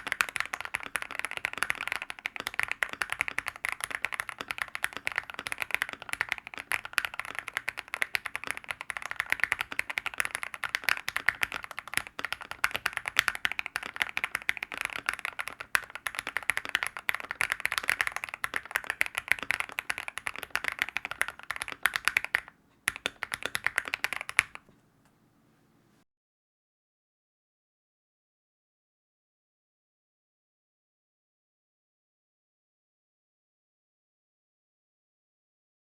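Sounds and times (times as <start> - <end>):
typing on mechanical keyboard: 0.0 - 24.7.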